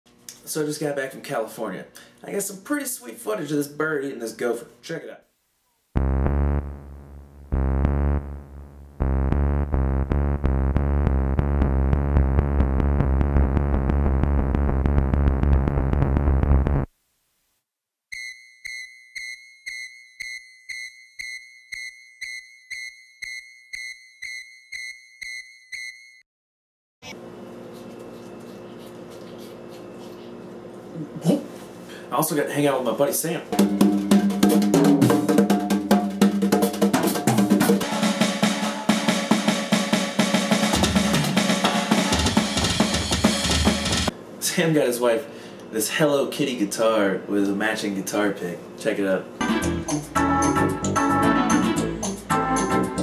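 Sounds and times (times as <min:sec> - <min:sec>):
drum kit snare and bass drum: 0:06.0 - 0:16.9, 0:33.5 - 0:44.1
low bass line: 0:06.0 - 0:16.9
rock music: 0:33.6 - 0:44.1, 0:49.4 - 0:53.0.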